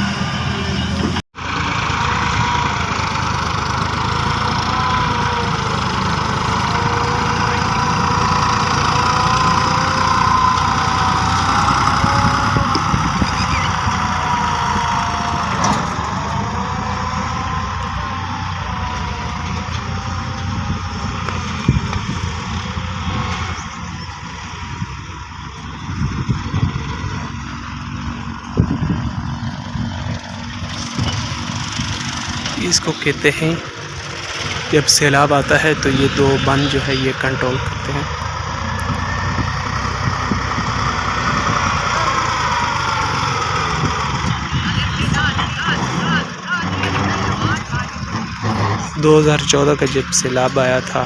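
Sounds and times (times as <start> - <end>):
heavy diesel engine running: 0.0 - 51.0.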